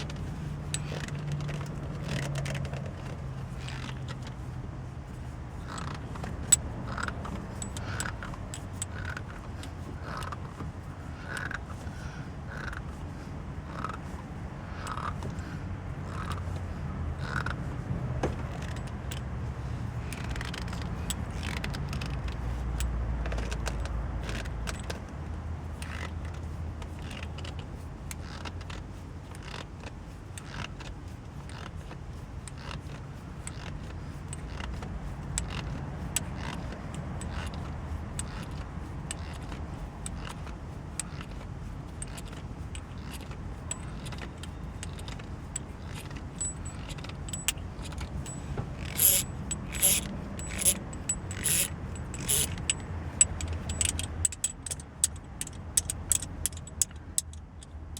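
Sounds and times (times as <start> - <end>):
low steady rumble: 24.7 - 57.9.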